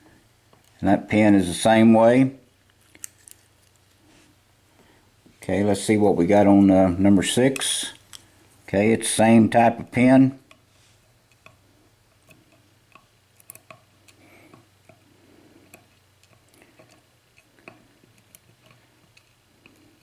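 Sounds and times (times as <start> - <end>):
small metal lock parts clicking: 12.9 - 14.2.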